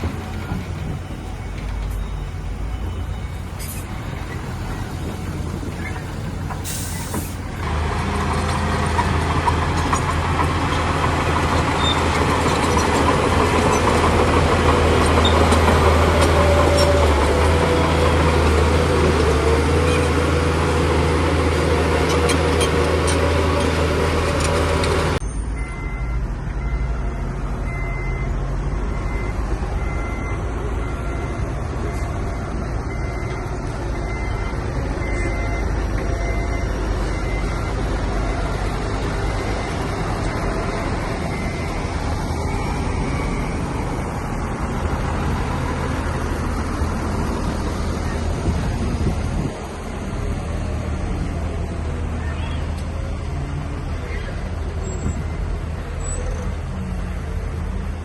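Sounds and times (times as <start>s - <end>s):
bulldozer diesel engine: 0.0s - 58.0s
short hiss: 6.6s - 7.5s.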